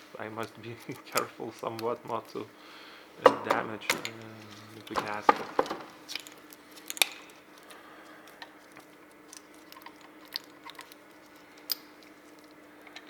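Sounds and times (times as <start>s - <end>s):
steady low hum: 0.0s - 13.0s
metal engine parts clicking: 3.3s - 7.7s, 9.3s - 13.0s.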